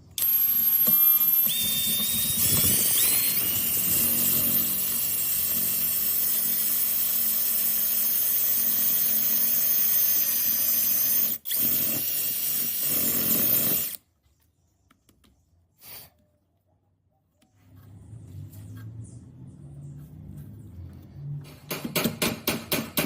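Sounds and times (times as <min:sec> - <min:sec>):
electric drill whining: 0:00.0 - 0:14.0.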